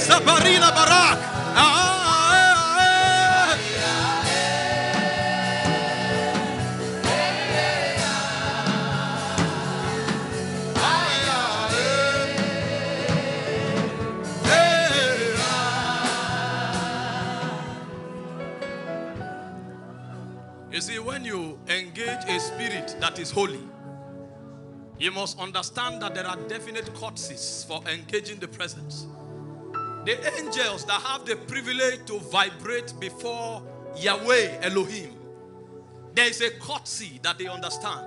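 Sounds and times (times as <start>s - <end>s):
gospel singing: 0.0s - 19.7s
sustained musical backing: 0.0s - 38.0s.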